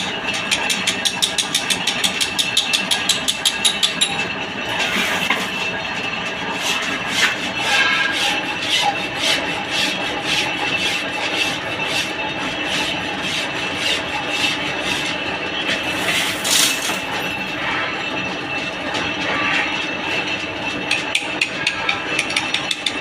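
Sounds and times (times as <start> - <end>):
lathe high whine: 3.9 - 23.0
lathe tool scraping rasp: 6.2 - 18.2.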